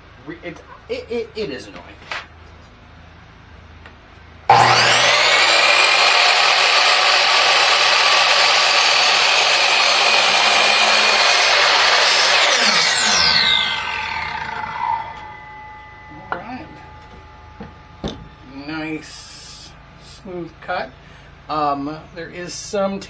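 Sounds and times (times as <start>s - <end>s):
miter saw cutting a board: 4.5s - 17.4s.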